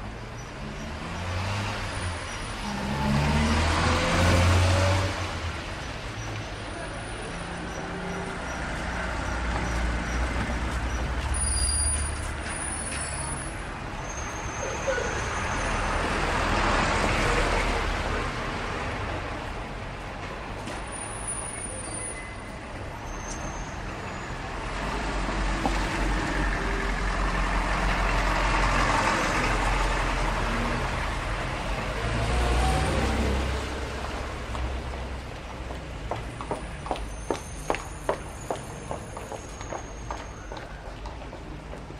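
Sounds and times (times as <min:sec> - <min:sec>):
heavy vehicles passing: 0:00.0 - 0:41.9
traffic rumble: 0:00.0 - 0:41.9
brakes squealing: 0:06.2 - 0:16.2.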